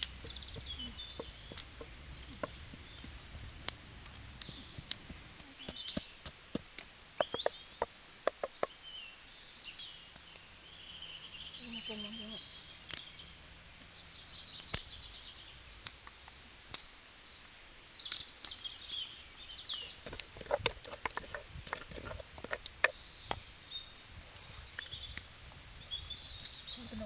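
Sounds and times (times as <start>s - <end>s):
sharp clicks and knocks from handling: 0.0s - 8.7s, 19.7s - 23.4s
birds chirping: 0.0s - 27.0s.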